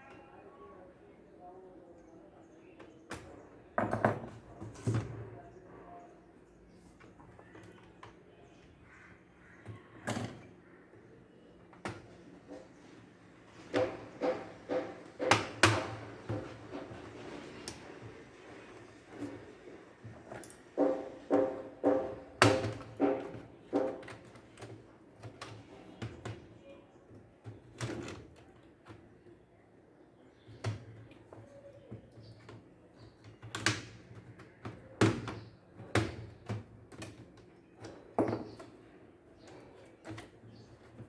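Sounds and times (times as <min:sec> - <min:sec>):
laptop parts clicking and knocking: 0:02.8 - 0:05.3, 0:13.6 - 0:29.3, 0:30.3 - 0:41.0.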